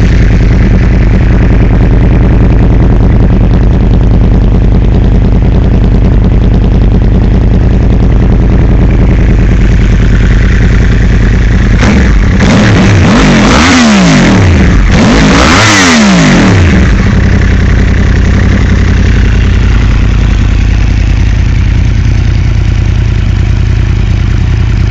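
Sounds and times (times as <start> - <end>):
engine idling and revving: 0.0 - 24.9.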